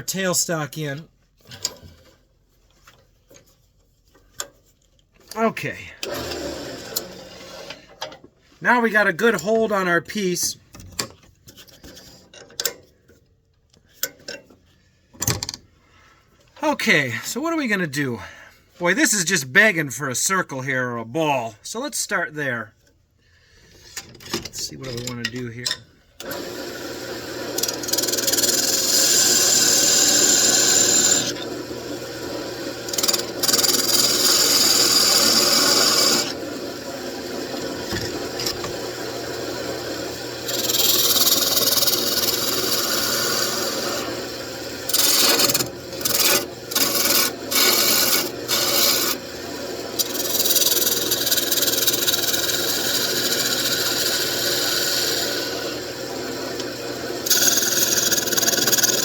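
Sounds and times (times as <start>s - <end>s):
wood lathe running: 6.0s - 7.7s, 26.2s - 59.0s
turning tool scraping wood: 27.6s - 49.2s, 49.9s - 59.0s.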